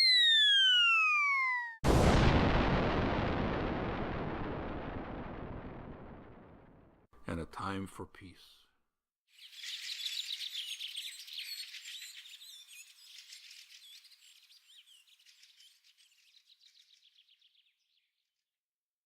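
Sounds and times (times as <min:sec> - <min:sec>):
songbirds chirping: 0:09.4 - 0:17.8.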